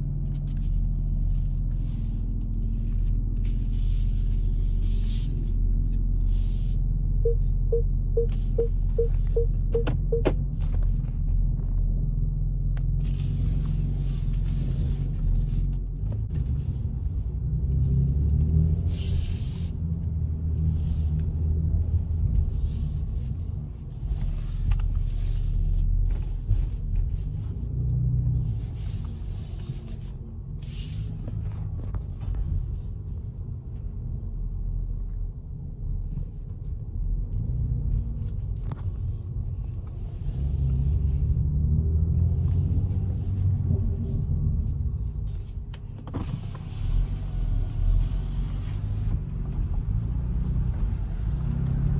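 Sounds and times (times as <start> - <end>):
car engine deep rumble: 0.0 - 51.9.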